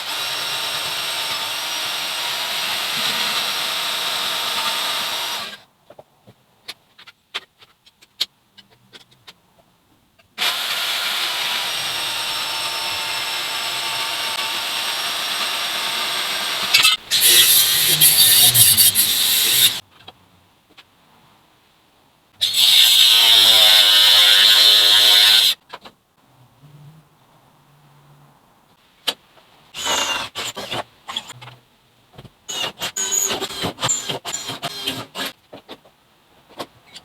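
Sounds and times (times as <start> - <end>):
power tool whining: 0.0 - 5.6, 10.4 - 19.8, 22.4 - 25.6, 32.5 - 35.3.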